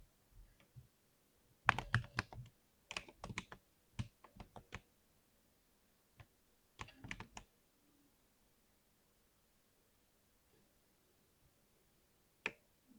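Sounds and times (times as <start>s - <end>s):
keyboard typing: 1.7s - 4.8s, 6.8s - 7.5s.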